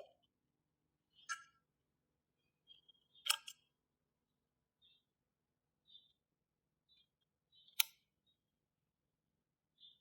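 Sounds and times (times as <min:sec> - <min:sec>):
faint high chirp: 0:02.4 - 0:03.7, 0:05.8 - 0:08.5, 0:09.7 - 0:10.0.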